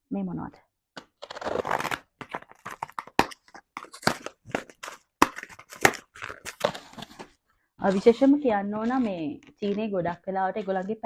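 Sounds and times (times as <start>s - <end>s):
packaging tearing: 1.0s - 9.7s
packaging crackling and crinkling: 1.0s - 9.9s.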